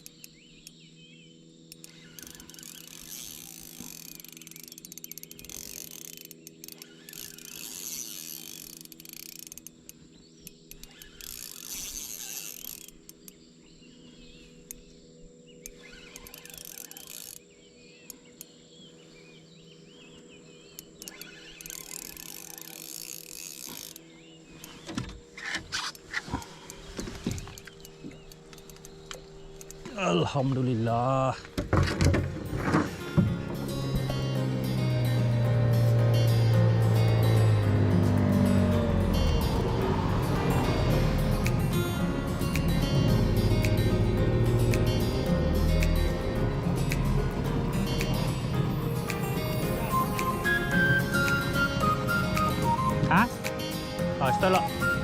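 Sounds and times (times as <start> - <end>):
fishing reel gears whirring: 1.6 - 13.5, 15.5 - 18.5, 20.6 - 29.9, 33.0 - 53.2.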